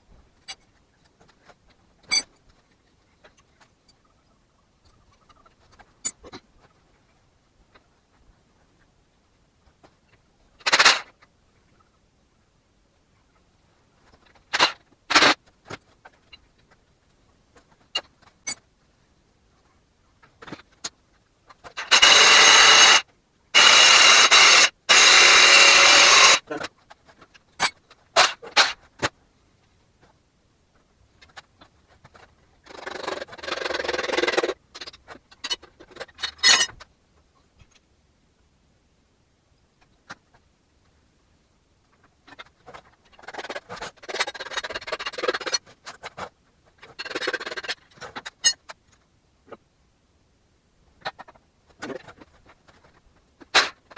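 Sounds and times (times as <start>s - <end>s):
power tool running: 21.8s - 23.0s, 23.6s - 26.4s.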